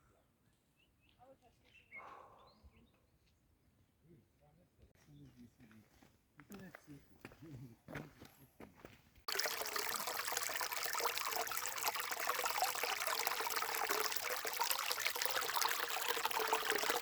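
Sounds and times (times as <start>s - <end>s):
stream trickling and burbling: 9.3s - 17.0s.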